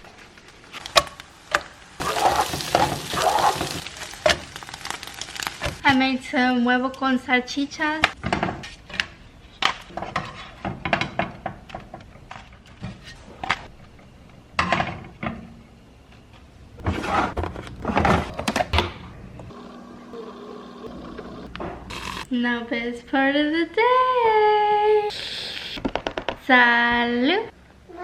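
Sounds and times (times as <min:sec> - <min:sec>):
kitchen knocks and clatter: 0:08.0 - 0:13.7, 0:14.6 - 0:15.4.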